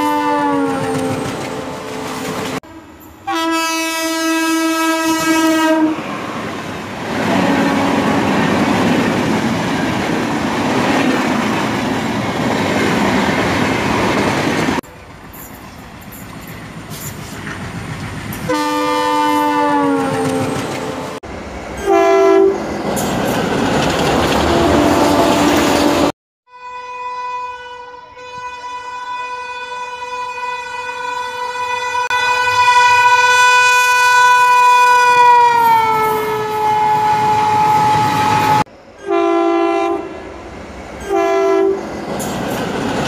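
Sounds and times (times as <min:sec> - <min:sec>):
train horn blast: 0:00.0 - 0:06.0, 0:07.2 - 0:08.4, 0:18.5 - 0:21.2, 0:21.8 - 0:22.6, 0:24.5 - 0:40.2, 0:41.0 - 0:41.8
train rumbling and clattering: 0:00.6 - 0:02.7, 0:06.0 - 0:26.1, 0:35.6 - 0:38.7, 0:40.0 - 0:43.0.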